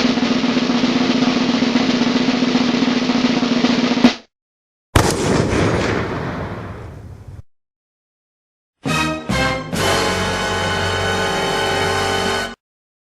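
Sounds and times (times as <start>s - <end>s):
snare drum roll: 0.0s - 4.3s.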